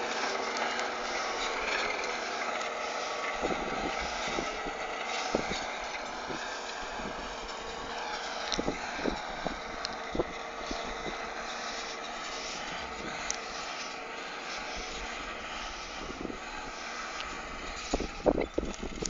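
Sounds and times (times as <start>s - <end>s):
distant tractor engine hum: 0.0s - 19.0s.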